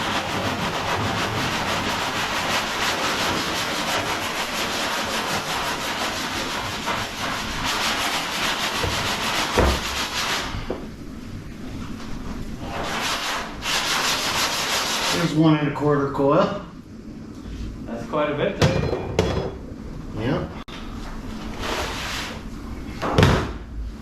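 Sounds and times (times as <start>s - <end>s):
rapid scraping and rubbing: 0.0s - 10.7s, 12.6s - 15.4s.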